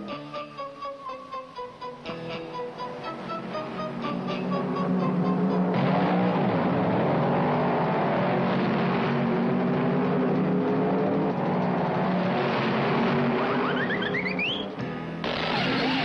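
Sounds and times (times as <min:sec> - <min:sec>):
cartoon car engine running: 0:08.4 - 0:16.0.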